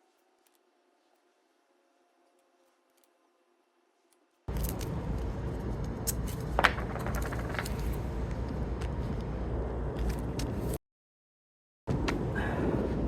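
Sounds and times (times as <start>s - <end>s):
scraping and clicking of materials: 4.0s - 9.3s.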